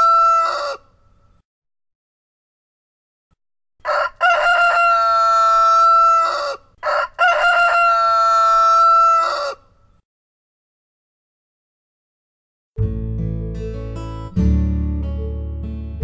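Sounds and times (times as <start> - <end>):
rooster crowing: 0.0 - 0.9, 3.8 - 9.8.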